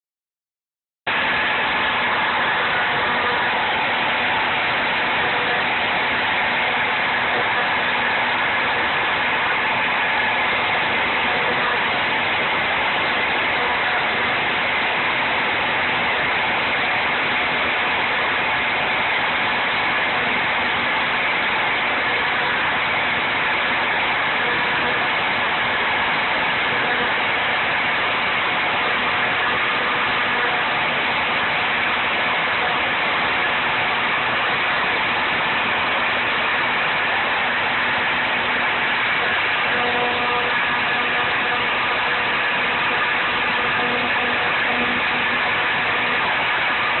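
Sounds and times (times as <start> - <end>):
router spindle whirring: 1.1 - 47.0.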